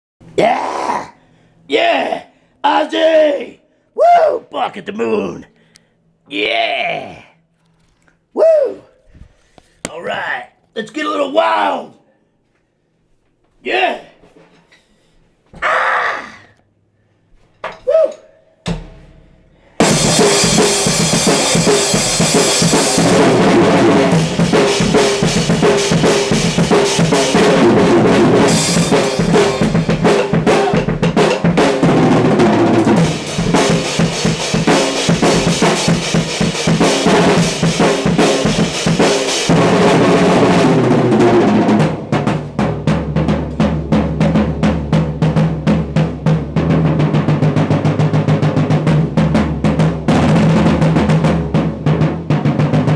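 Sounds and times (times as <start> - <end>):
fast drum kit solo: 18.7 - 52.9.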